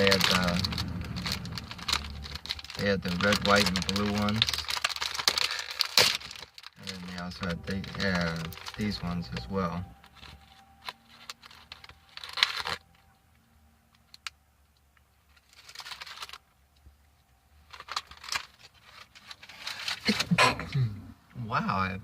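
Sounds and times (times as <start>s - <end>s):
packaging crinkling: 0.0s - 13.1s, 13.9s - 14.4s, 15.2s - 20.4s
man sneezing: 20.1s - 21.0s.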